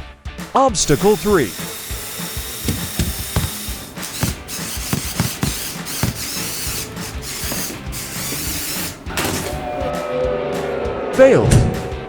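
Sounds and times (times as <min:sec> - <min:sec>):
toy motor and plastic gears: 0:00.8 - 0:09.8.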